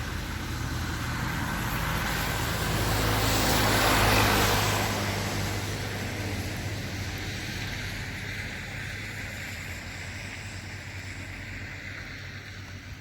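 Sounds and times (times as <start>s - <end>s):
car engine hum: 0.0s - 13.0s
road noise: 0.0s - 13.0s
vehicle passing: 0.0s - 13.0s.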